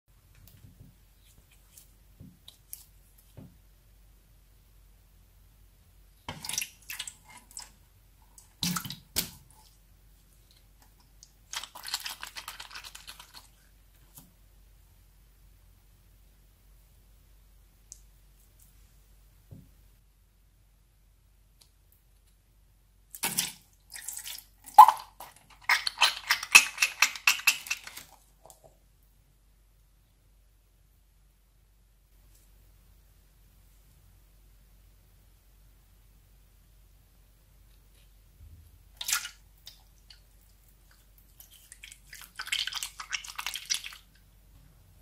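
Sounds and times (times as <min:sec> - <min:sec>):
slime squelching: 0:08.4 - 0:13.8, 0:38.9 - 0:44.2
slime squelching and popping: 0:23.1 - 0:27.4.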